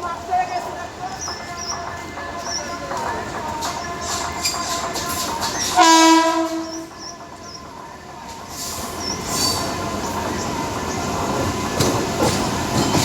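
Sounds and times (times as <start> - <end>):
train running noise: 0.0 - 13.0
train horn blast: 5.8 - 6.9.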